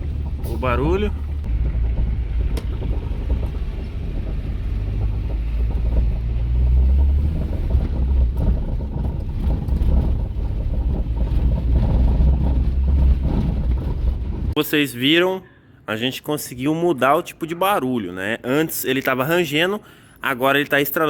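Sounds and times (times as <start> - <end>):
car road and engine rumble: 0.0 - 14.6
suspension cracking: 0.0 - 14.6.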